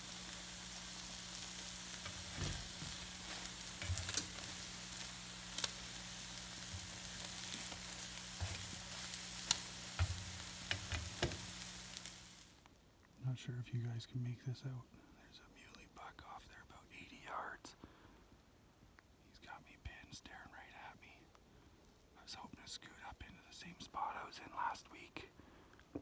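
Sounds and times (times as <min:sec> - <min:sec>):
small clicks and crackles: 0:00.0 - 0:13.2
faint low hum: 0:00.0 - 0:25.9
faint steady hiss: 0:00.0 - 0:26.0.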